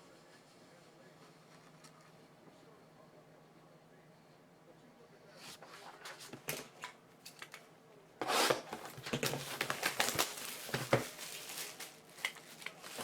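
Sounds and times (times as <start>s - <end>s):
packaging crinkling and tearing: 8.5s - 13.0s.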